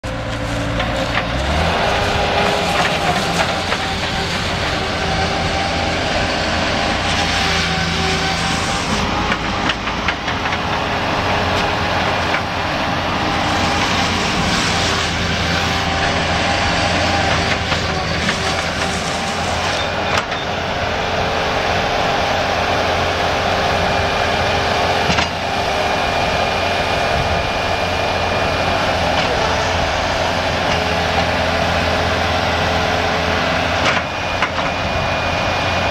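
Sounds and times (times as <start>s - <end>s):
diesel engine running: 0.0s - 35.9s.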